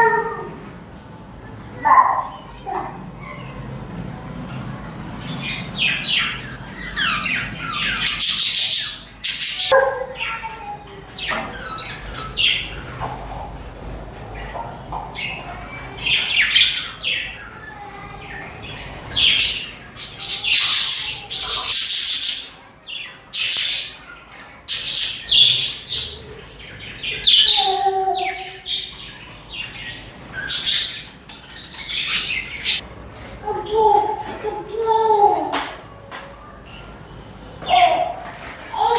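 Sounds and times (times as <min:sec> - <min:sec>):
budgies chirping: 0:05.1 - 0:32.8.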